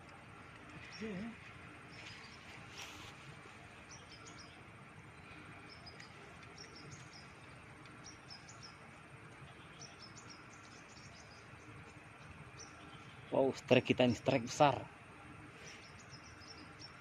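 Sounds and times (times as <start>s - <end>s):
low background hiss: 0.0s - 17.0s
small bird chirping: 3.7s - 8.8s.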